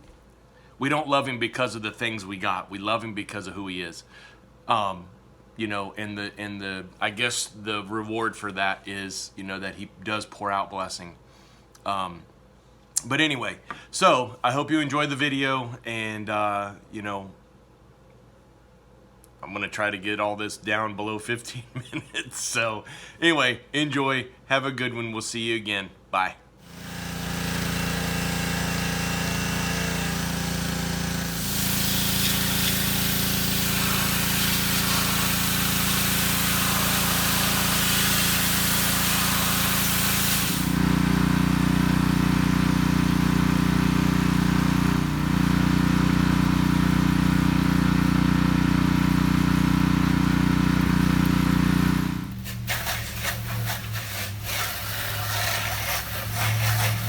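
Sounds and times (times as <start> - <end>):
loud hiss: 26.6 - 41.0, 52.2 - 57.0
small gasoline engine running: 26.6 - 54.4.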